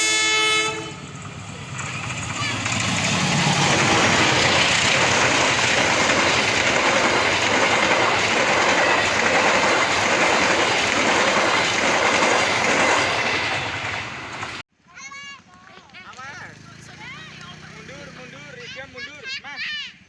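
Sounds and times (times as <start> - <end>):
train wheels rushing on rails: 0.0 - 14.6.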